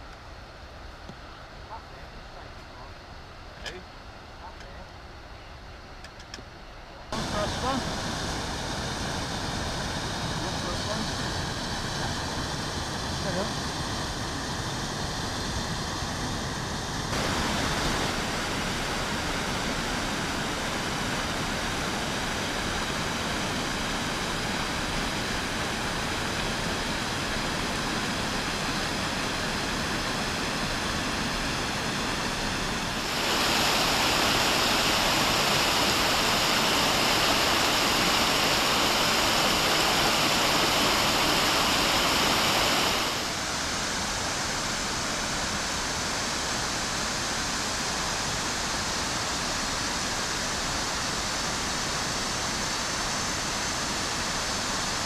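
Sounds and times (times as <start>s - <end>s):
waterfall rushing: 7.2s - 11.1s, 17.1s - 47.0s.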